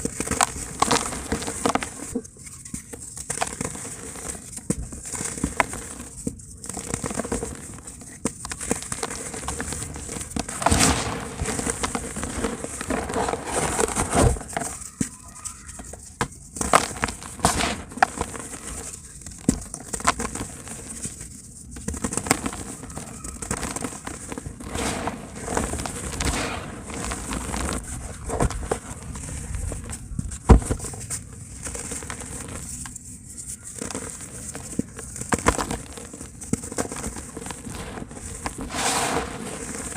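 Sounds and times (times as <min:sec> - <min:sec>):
dry cement crumbling and crackling: 0:00.0 - 0:39.9
sharp crack: 0:10.5 - 0:14.2, 0:24.6 - 0:28.5.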